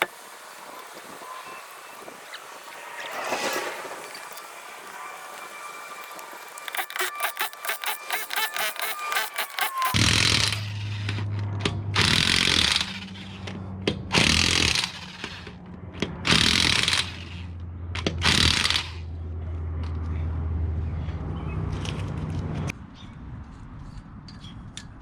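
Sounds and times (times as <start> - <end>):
impact wrench bursts: 6.7 - 11.2, 11.9 - 13.5, 14.1 - 15.6, 16.2 - 19.0.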